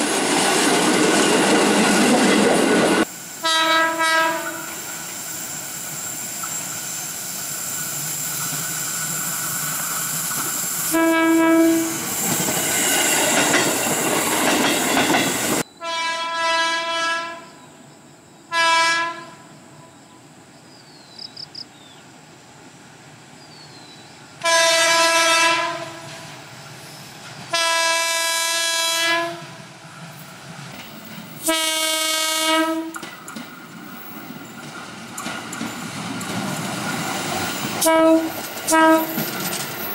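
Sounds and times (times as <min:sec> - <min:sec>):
passing train rumble: 0:00.0 - 0:15.7, 0:21.6 - 0:39.9
electric train horn: 0:03.4 - 0:04.8, 0:10.9 - 0:12.1, 0:15.8 - 0:17.6, 0:18.5 - 0:19.6, 0:24.4 - 0:26.2, 0:27.5 - 0:29.6, 0:31.4 - 0:33.0, 0:37.8 - 0:39.2.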